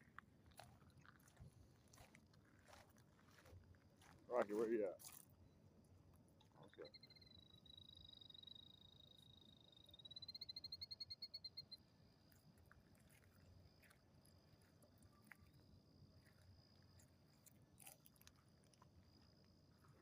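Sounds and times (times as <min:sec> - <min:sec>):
faint high whine: 0:03.9 - 0:17.6
small animal chirping trill: 0:06.8 - 0:11.8.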